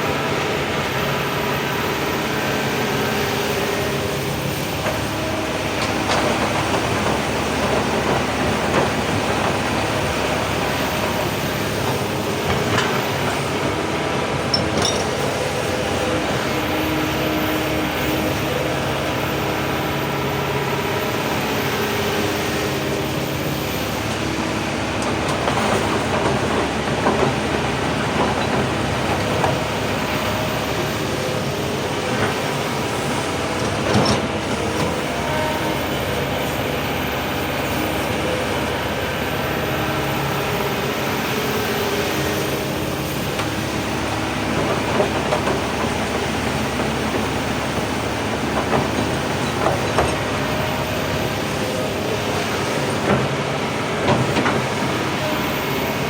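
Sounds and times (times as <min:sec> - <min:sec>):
excavator diesel engine running: 0:00.0 - 0:56.0
clanks and rattles of rock: 0:14.4 - 0:15.5, 0:33.6 - 0:35.0.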